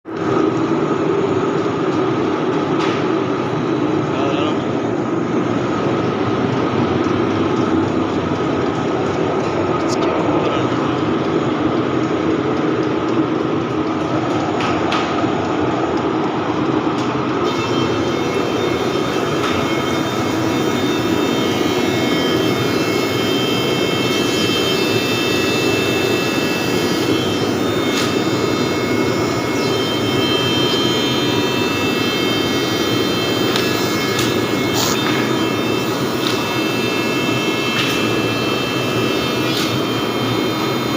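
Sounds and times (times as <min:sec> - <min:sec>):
surface planer running: 0:17.4 - 0:40.9
thin high whining tones: 0:17.5 - 0:40.9.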